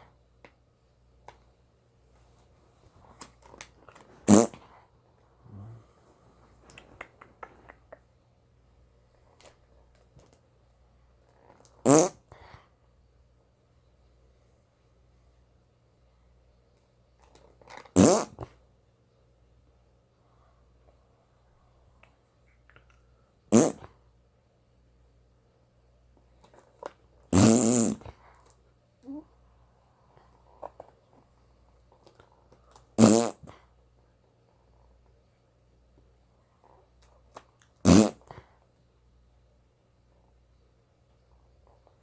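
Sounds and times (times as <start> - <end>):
fart noises: 3.9 - 4.8, 11.8 - 12.5, 17.7 - 18.6, 23.5 - 24.0, 27.3 - 28.2, 33.0 - 33.6, 37.8 - 38.5
fart sound rising in pitch: 4.2 - 4.6, 27.4 - 28.0, 33.0 - 33.4, 37.9 - 38.2.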